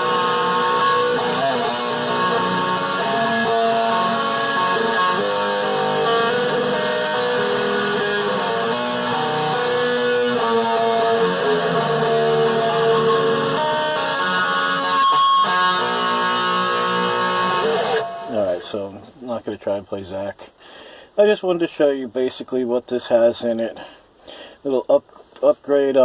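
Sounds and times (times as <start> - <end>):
electric guitar chords through amplifier: 0.0 - 18.6.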